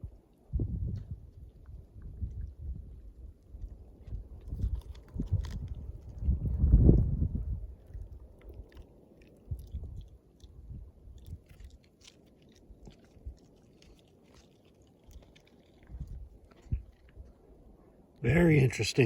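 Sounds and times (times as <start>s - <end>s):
wind buffeting microphone: 0.0s - 8.6s, 9.4s - 11.6s
faint crackles and ticks: 0.1s - 6.4s, 7.8s - 19.0s.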